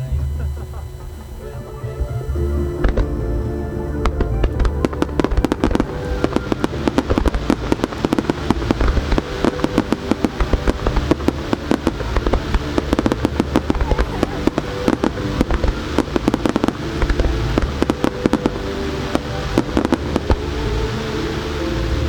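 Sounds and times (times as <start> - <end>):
fireworks bursting: 0.0 - 22.0.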